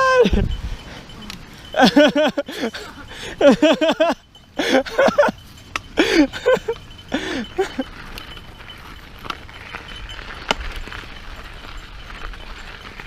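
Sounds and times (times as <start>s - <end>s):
bike rolling over dirt trail: 3.4s - 13.0s.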